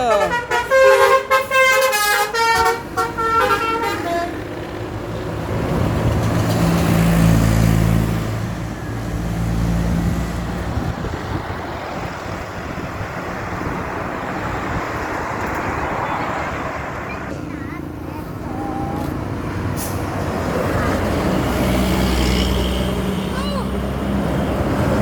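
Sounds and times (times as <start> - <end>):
bus horn playing a tune: 0.0 - 4.6
bus engine running: 0.0 - 25.0
road noise: 0.0 - 25.0.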